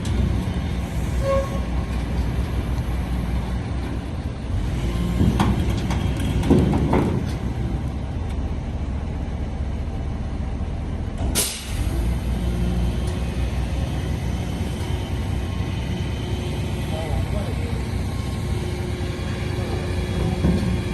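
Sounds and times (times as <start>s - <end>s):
excavator diesel engine rumbling: 0.0s - 20.9s
brief sharp hiss: 11.4s - 11.9s.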